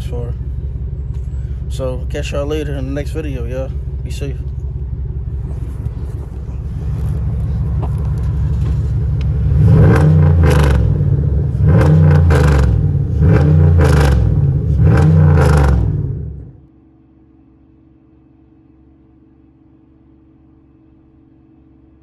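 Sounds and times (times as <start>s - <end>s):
car engine idling and revving: 0.0s - 16.6s.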